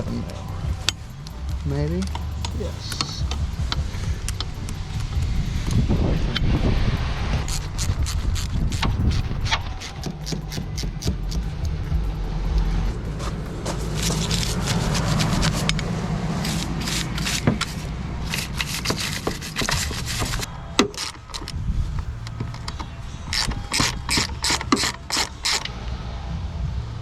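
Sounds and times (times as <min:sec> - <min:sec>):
ratchet clicking: 0:00.0 - 0:25.7
scraping and rubbing of parts: 0:00.0 - 0:25.7.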